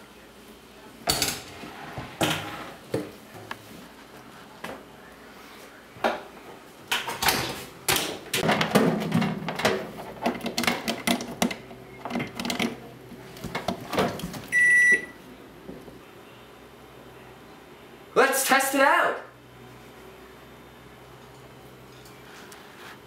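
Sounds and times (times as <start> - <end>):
objects knocking and clattering: 6.9 - 12.8.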